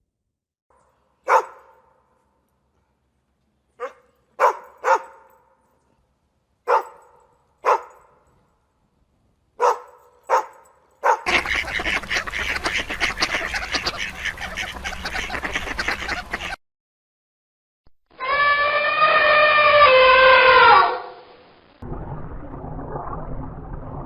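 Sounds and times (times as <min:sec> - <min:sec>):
sharp animal calls: 0:18.2 - 0:21.2.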